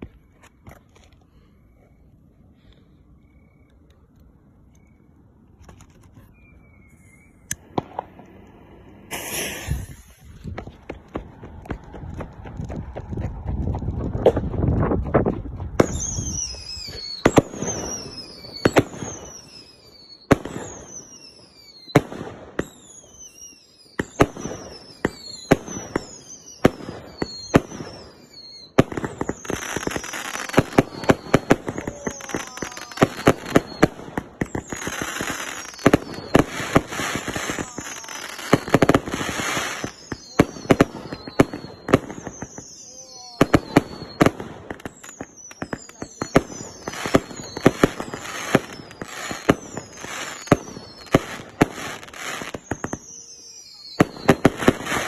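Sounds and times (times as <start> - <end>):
falling firework whistles: 4.7 - 13.1, 15.3 - 55.0
hissing crackle: 5.6 - 12.8
firework pops: 7.5 - 8.5, 9.1 - 17.8.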